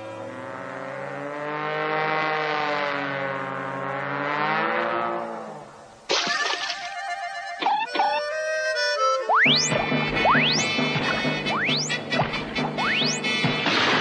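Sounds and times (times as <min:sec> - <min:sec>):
music: 0:06.7 - 0:14.0.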